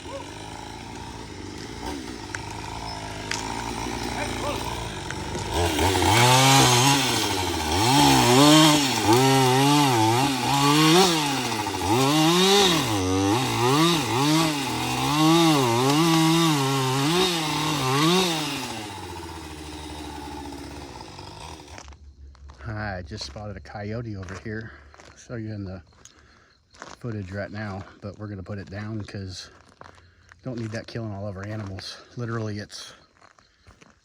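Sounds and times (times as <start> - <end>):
small engine revving: 0.0 - 22.0.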